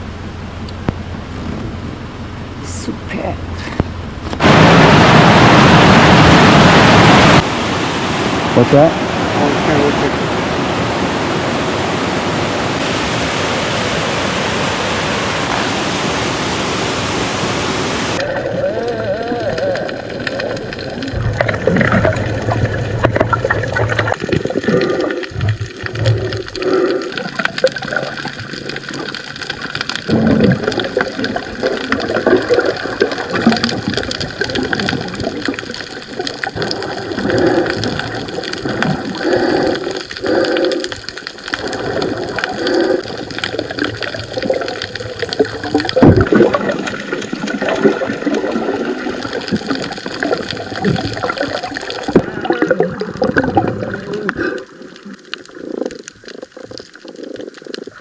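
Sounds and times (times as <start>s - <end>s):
water sloshing and gurgling: 18.0s - 58.0s.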